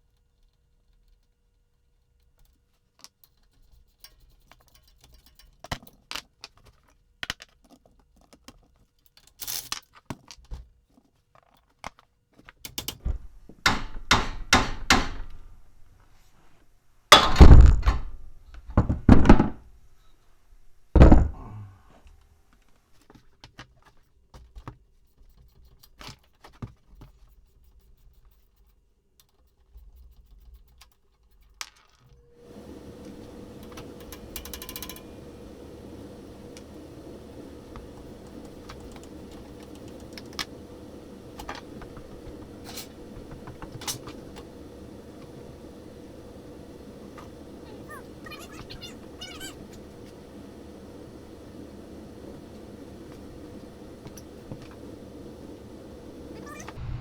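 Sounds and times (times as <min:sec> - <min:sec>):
tools and metal parts clicking: 0:03.2 - 0:06.0.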